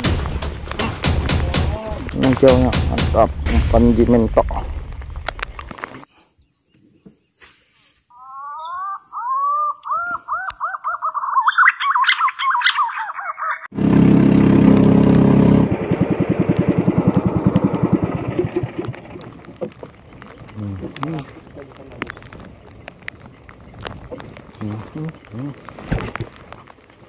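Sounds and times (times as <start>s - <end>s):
bird rising chirps: 8.1s - 13.7s
small engine running loudly: 13.7s - 19.7s.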